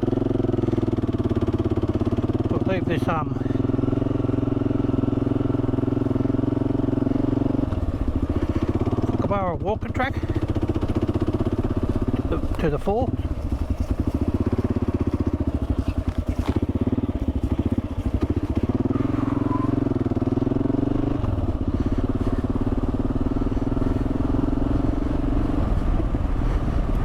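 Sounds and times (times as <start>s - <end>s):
motorcycle engine running: 0.0s - 27.0s.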